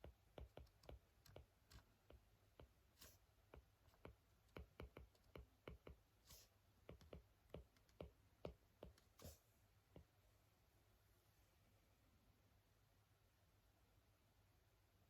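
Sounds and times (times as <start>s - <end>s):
pen scratching strokes: 0.0s - 9.5s.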